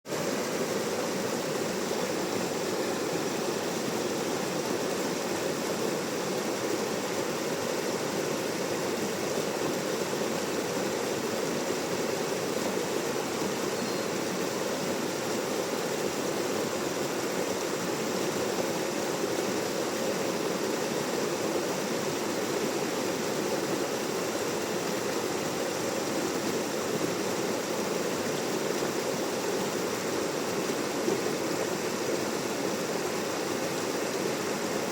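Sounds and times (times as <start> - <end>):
stream rushing: 0.1 - 34.9.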